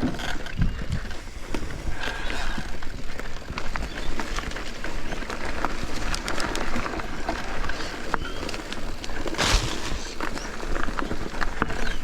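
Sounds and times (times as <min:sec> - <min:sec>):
wind on microphone: 0:00.0 - 0:03.0
bike clicking and rattling: 0:00.0 - 0:12.0
bike tyres on gravel: 0:00.0 - 0:12.0.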